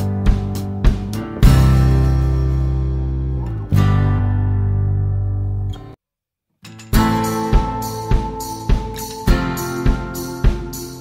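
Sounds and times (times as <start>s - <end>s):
song with steady drum beat: 0.0s - 2.4s, 7.0s - 11.0s.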